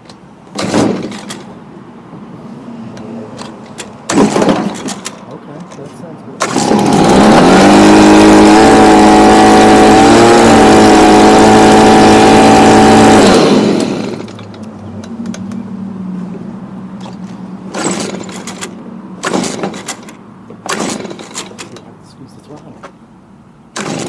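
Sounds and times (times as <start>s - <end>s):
leaf blower engine: 6.4s - 14.5s, 23.8s - 24.0s.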